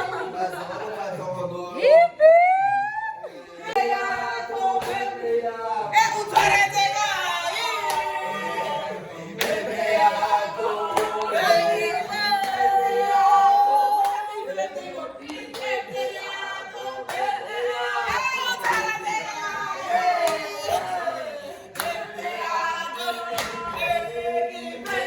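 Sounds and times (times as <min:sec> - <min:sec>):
group of people singing: 0:00.0 - 0:25.0
hand claps: 0:04.8 - 0:05.1, 0:07.8 - 0:08.1, 0:09.4 - 0:09.7, 0:10.9 - 0:11.4, 0:17.1 - 0:17.3, 0:18.1 - 0:19.0, 0:20.2 - 0:20.9, 0:21.8 - 0:22.1, 0:23.3 - 0:23.8.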